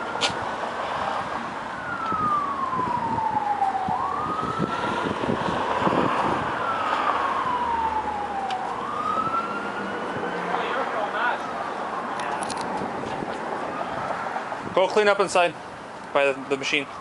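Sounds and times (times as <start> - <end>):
emergency siren wailing: 0.0 - 14.7, 16.4 - 17.0.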